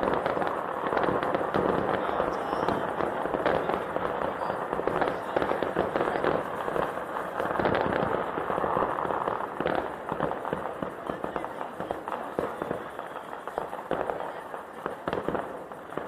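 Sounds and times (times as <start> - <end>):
fireworks bangs and crackles: 0.0 - 16.0.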